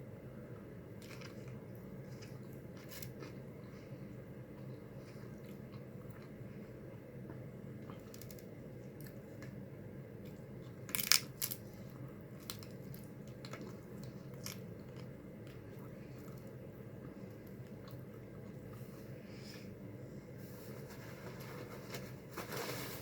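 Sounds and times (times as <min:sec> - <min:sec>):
steady low hum: 0:00.0 - 0:23.0
person chewing: 0:01.0 - 0:09.6, 0:10.2 - 0:19.0.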